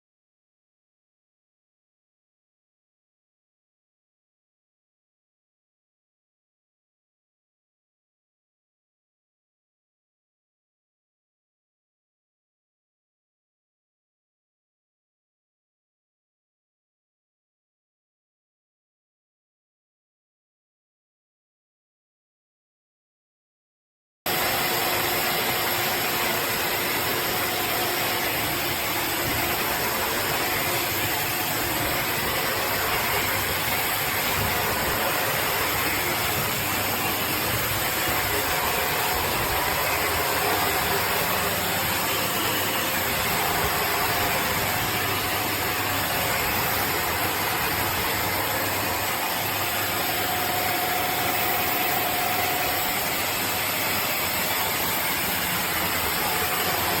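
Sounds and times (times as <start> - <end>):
vacuum cleaner running: 24.3 - 57.0.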